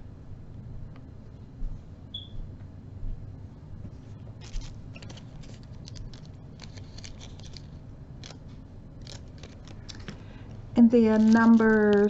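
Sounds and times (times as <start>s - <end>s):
plastic baggies crinkling: 4.4s - 12.0s.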